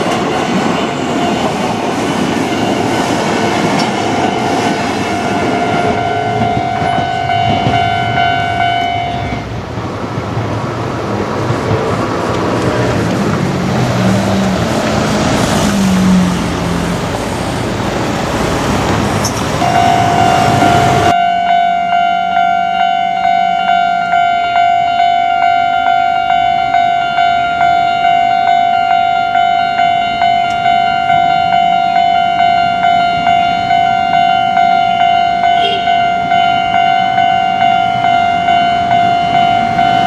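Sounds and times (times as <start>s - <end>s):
level crossing warning bell: 0.0s - 9.5s, 19.3s - 40.0s
passing vehicle engine hum: 3.0s - 21.2s.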